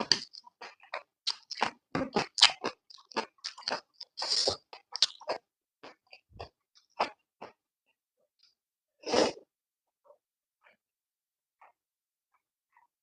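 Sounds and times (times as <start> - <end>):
person chewing noodles: 0.0 - 9.4.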